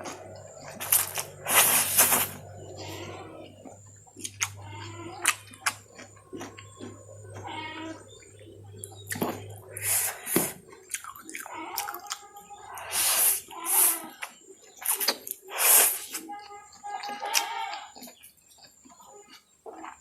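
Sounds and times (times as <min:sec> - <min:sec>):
noodle slurping: 0:00.0 - 0:04.5, 0:12.7 - 0:14.2, 0:14.8 - 0:16.2
wet mouth clicks and chewing: 0:03.5 - 0:07.4, 0:08.0 - 0:20.0.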